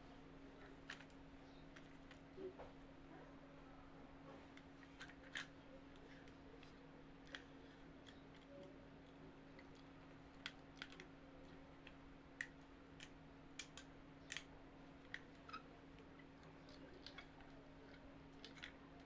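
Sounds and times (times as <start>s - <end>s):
faint steady hum: 0.0s - 19.0s
plastic toy pieces clicking: 9.7s - 11.1s, 16.7s - 18.8s.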